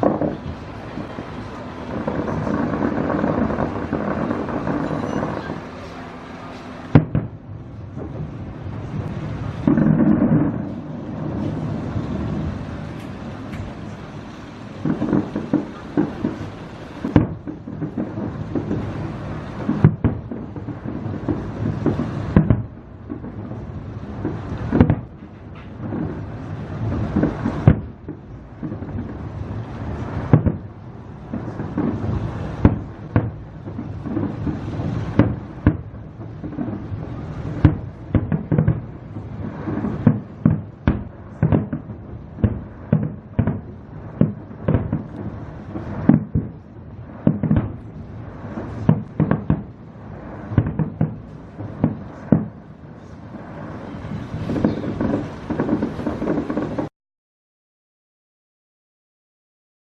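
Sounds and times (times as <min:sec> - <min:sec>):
firework shell bangs: 0:00.0 - 0:08.3, 0:09.6 - 0:13.9, 0:14.8 - 0:23.6, 0:31.3 - 0:49.7, 0:50.5 - 0:53.1, 0:53.9 - 0:56.9
rumble of echoing explosions: 0:00.0 - 0:56.9.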